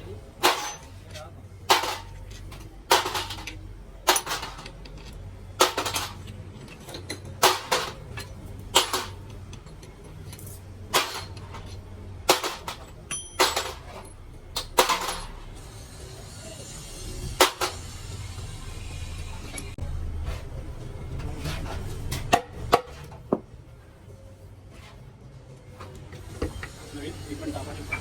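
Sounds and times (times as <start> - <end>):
steady low hum: 0.0 - 28.0
hammer striking metal: 0.4 - 1.0, 12.3 - 14.0.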